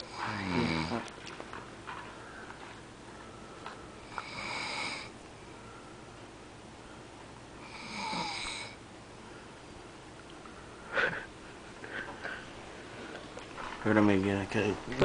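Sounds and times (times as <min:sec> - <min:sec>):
man snoring: 0:00.0 - 0:01.1, 0:04.0 - 0:05.1, 0:07.6 - 0:08.8.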